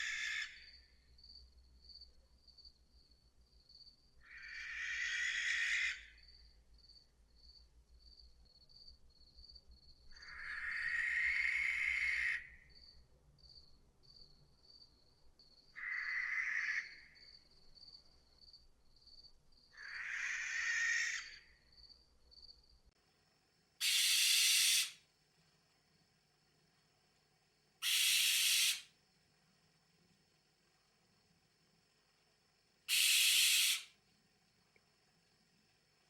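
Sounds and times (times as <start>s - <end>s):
barn owl hissing calls: 0.0s - 0.6s, 4.2s - 6.1s, 10.2s - 12.5s, 15.8s - 16.8s, 19.8s - 21.4s, 23.8s - 25.0s, 27.8s - 29.0s, 32.9s - 34.0s
insect trill: 0.0s - 36.0s.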